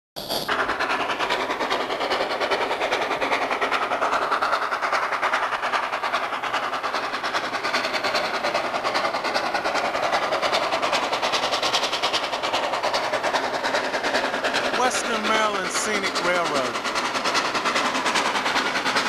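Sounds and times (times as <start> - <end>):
train running: 0.2 - 19.0.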